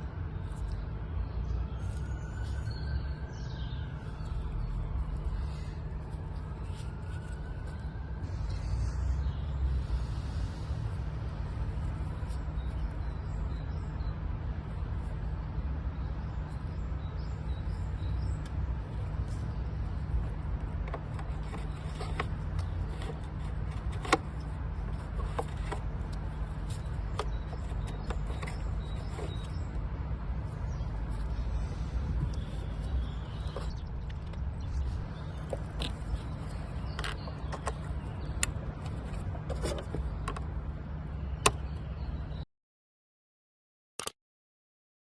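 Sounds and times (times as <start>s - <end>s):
steady low rumble: 0.0s - 42.4s.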